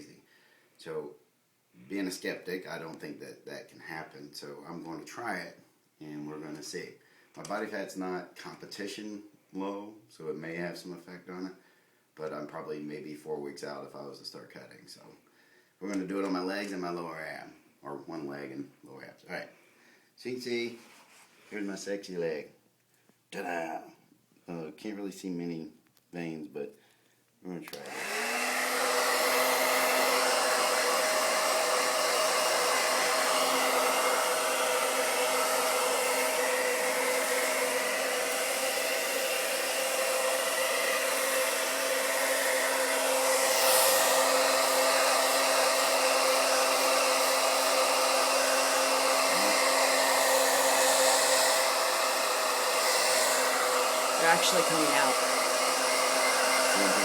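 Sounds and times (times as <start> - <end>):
hair dryer running: 27.7 - 57.0.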